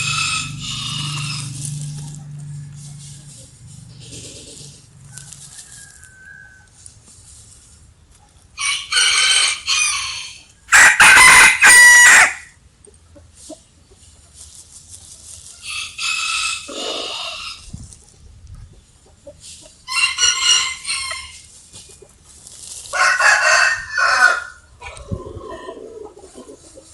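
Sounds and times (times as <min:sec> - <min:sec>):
rooster crowing: 0:00.0 - 0:01.6, 0:05.1 - 0:06.8, 0:08.6 - 0:12.5, 0:22.9 - 0:24.7
hens clucking faintly: 0:12.7 - 0:26.9.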